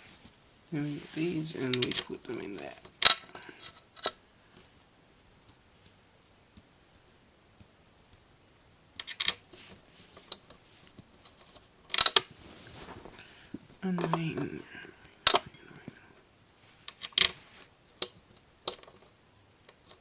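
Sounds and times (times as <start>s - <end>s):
parts clicking and rattling: 11.2s - 12.3s.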